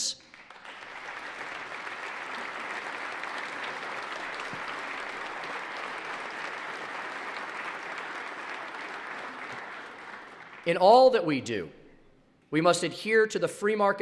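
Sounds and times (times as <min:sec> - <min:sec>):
audience applauding: 0:00.0 - 0:11.2.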